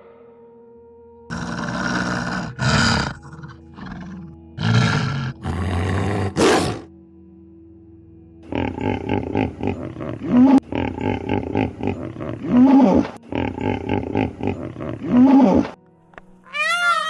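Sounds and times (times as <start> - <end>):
big cat roaring: 1.3 - 6.9, 8.5 - 15.8.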